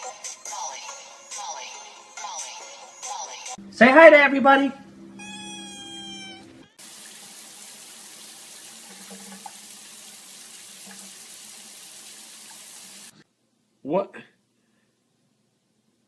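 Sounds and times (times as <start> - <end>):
water running from a tap: 6.8 - 13.2.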